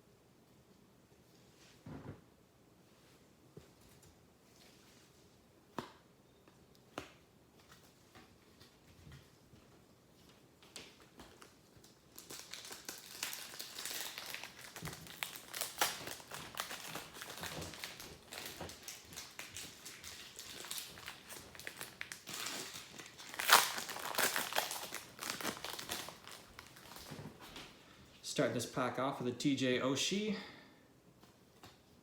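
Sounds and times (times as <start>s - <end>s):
foil wrapper crinkling: 10.9s - 27.6s.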